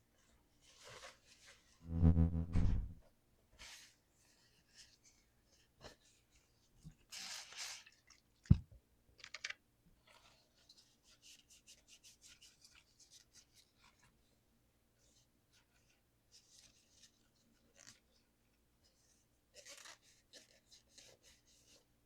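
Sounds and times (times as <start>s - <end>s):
sharp knock: 1.9s - 3.0s.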